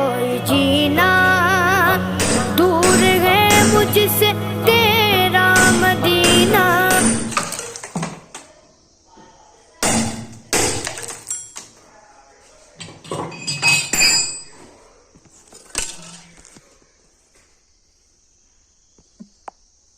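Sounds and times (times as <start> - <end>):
hard objects clinking: 5.6 - 8.2, 10.6 - 11.7
faint high-pitched hiss: 11.0 - 19.9.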